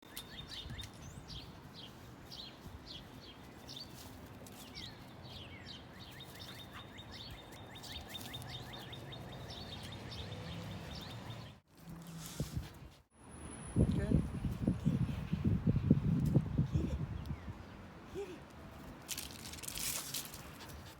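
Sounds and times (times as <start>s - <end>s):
birds chirping: 0.0s - 11.6s
outdoor background noise: 0.0s - 20.9s.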